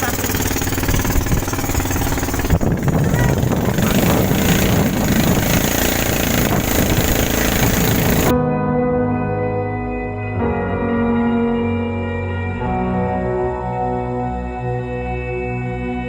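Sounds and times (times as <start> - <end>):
boat engine running: 0.0 - 8.3
rough rushing noise: 0.0 - 8.3.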